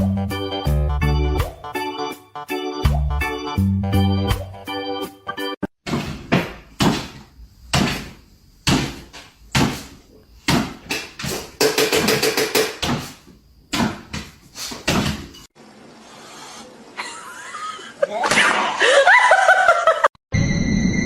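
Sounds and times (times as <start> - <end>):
sharp knocks: 5.8 - 15.4.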